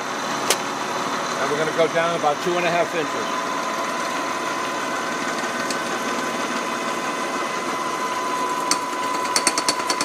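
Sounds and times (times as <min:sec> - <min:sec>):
milling machine motor whine: 0:00.0 - 0:10.0
sharp rattling clicks: 0:08.7 - 0:10.0.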